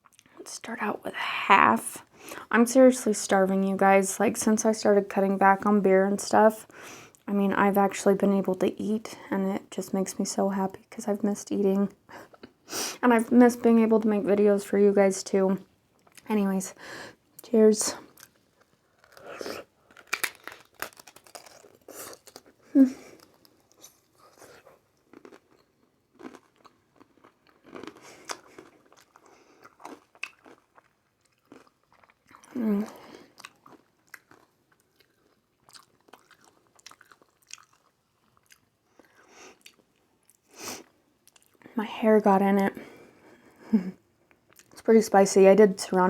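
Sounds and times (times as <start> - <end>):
crunching and chewing: 18.0 - 41.6.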